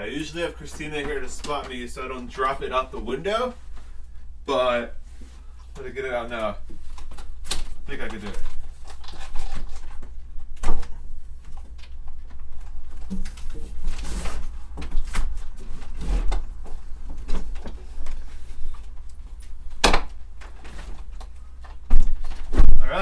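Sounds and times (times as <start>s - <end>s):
air conditioner clunks and knocks: 19.7s - 21.0s.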